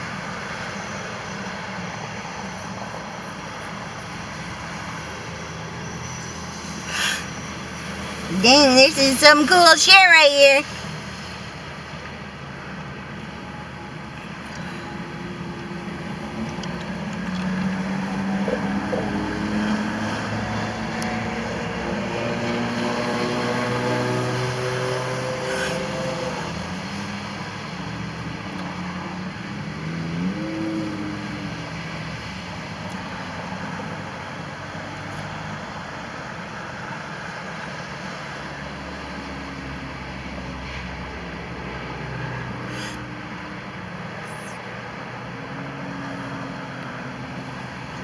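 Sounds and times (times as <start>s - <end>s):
traffic rumble: 0.0s - 48.0s
vehicles passing on road: 0.0s - 48.0s.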